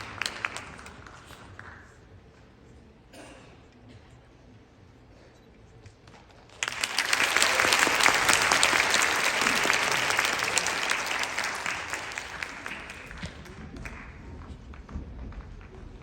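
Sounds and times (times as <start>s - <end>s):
audience applauding: 0.0s - 1.8s, 6.5s - 14.2s.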